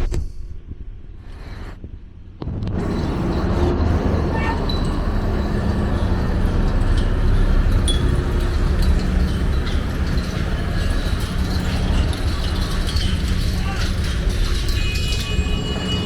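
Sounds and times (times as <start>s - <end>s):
motor traffic rumble: 2.8s - 16.0s
light metallic clinks: 4.6s - 16.0s.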